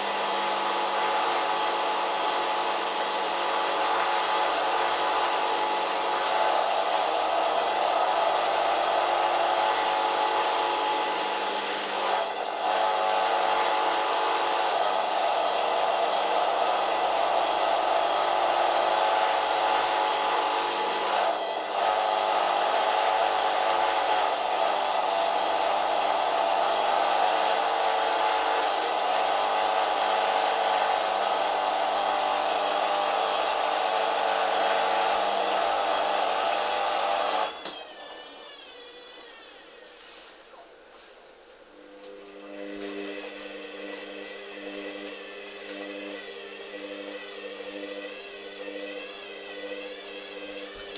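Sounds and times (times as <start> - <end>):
washing machine spinning: 41.8 - 50.9.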